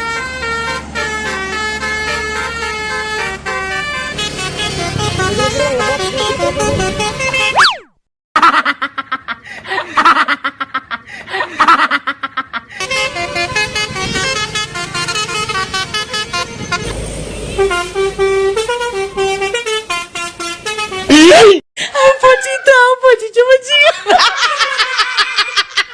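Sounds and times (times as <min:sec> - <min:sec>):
bus horn playing a tune: 0:00.0 - 0:07.6, 0:12.8 - 0:21.5.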